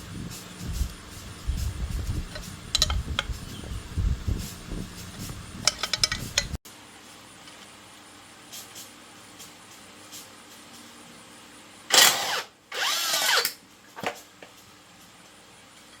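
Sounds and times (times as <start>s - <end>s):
metal tools clinking: 2.2s - 6.6s.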